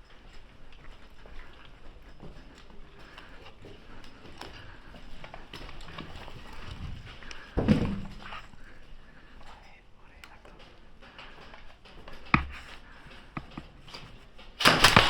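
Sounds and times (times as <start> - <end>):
footsteps: 0.0 - 15.0.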